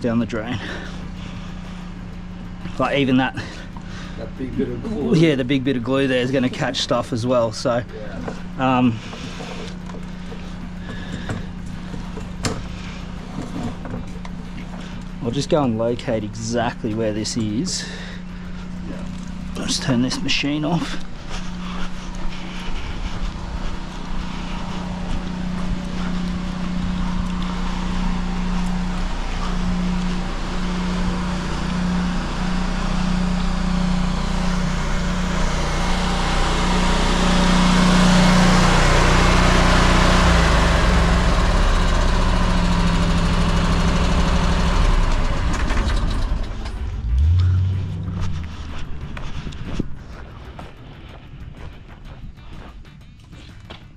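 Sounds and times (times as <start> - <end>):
engine humming: 0.0 - 53.9
rushing noise: 45.5 - 51.0.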